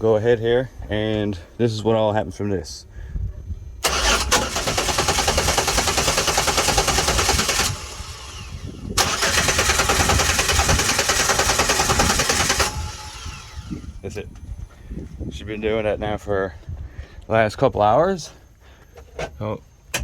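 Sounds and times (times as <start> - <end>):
car engine cranking on starter: 3.8 - 14.0.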